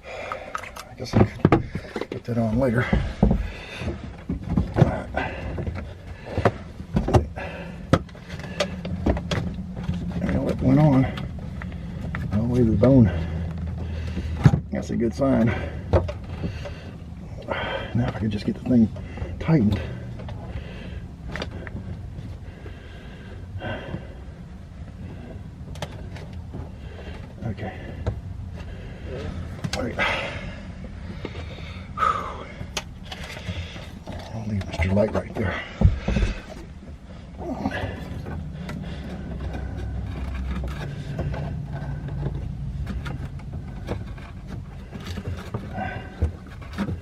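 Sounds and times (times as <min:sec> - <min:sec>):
man breathing hard and straining: 0:00.0 - 0:47.0
steady low hum: 0:00.0 - 0:47.0.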